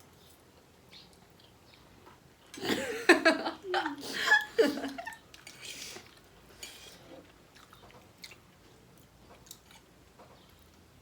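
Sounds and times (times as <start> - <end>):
chewing and eating: 5.1 - 11.0.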